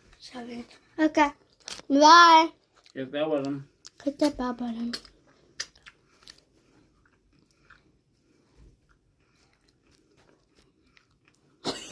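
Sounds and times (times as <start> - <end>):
chewing and crunching: 2.6 - 11.7.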